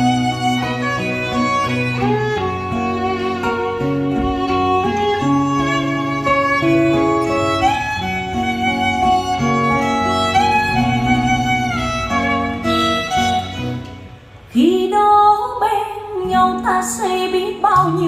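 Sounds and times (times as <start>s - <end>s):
violin melody: 0.0s - 14.6s
plucked guitar: 0.0s - 15.1s
bass line: 8.9s - 14.1s.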